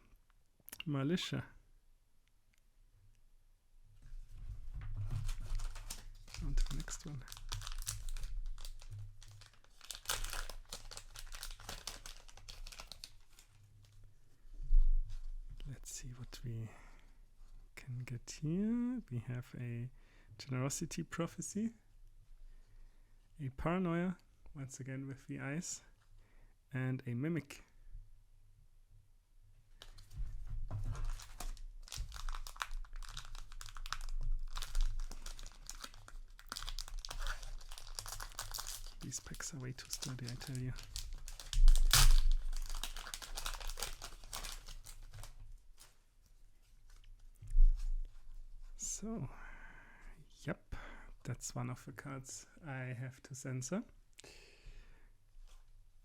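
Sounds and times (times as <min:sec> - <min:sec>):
wrapper crinkling and tearing: 0:05.2 - 0:14.0, 0:29.8 - 0:30.1, 0:30.9 - 0:46.0.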